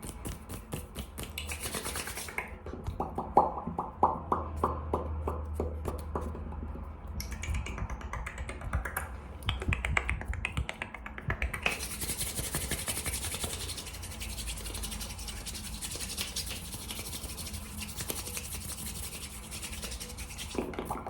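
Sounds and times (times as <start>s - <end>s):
rapid finger snapping: 0.0s - 13.7s
palms rubbing together: 0.1s - 2.6s, 7.2s - 21.0s.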